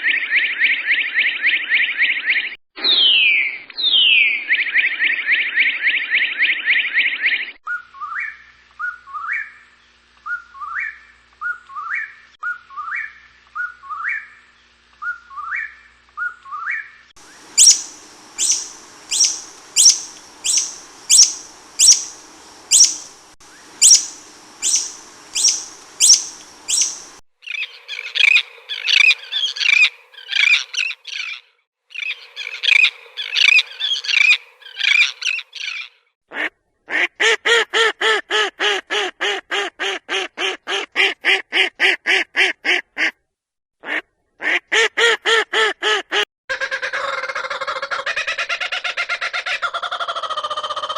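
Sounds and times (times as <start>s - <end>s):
rising whistled bird calls: 0.4s - 14.4s, 15.0s - 35.9s
high sharp bird notes: 17.2s - 27.2s
bird chattering: 17.5s - 31.4s.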